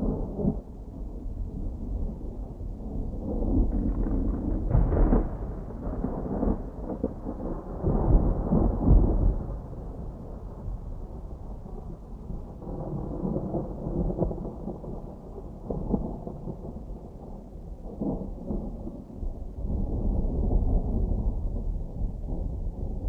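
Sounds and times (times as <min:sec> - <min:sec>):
distant thunder rumbling: 0:00.0 - 0:23.0
thunder cracks: 0:03.0 - 0:17.2.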